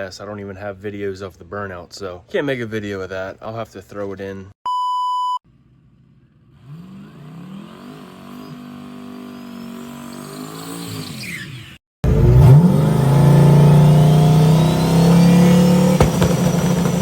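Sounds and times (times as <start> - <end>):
drag car engine revving: 5.7 - 17.0.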